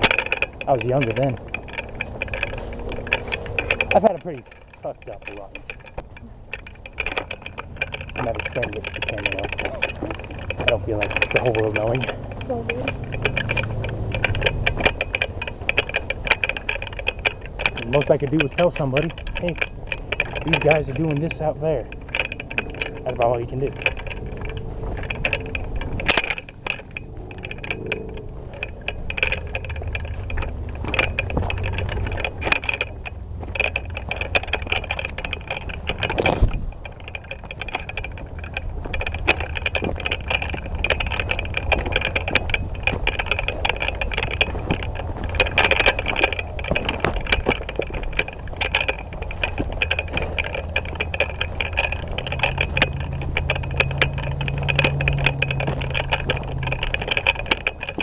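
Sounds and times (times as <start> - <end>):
gear clicking and rattling: 0.0 - 58.0
low handling rumble: 0.0 - 58.0.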